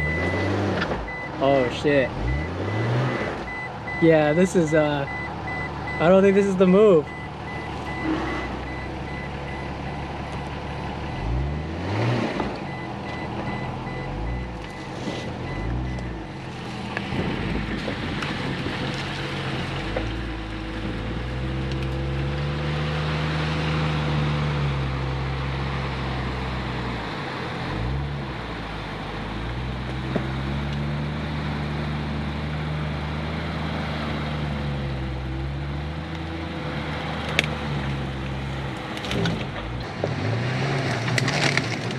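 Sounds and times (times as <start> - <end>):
pickup truck engine revving: 0.0 - 26.9.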